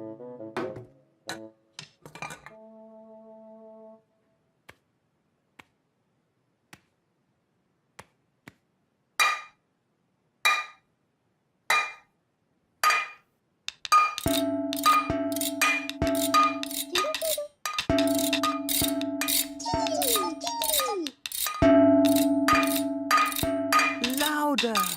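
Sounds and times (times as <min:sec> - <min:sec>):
clinks on ringing object: 0:21.4 - 0:24.9.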